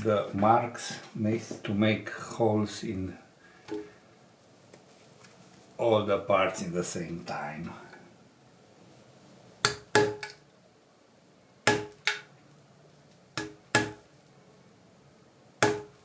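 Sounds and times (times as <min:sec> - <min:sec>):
mallet striking punch tool: 0:09.7 - 0:10.3, 0:11.7 - 0:12.2, 0:13.4 - 0:14.0, 0:15.6 - 0:16.0.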